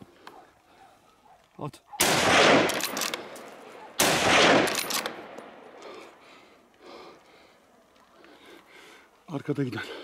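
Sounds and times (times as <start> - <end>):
gunshot echoing: 2.0 - 6.0.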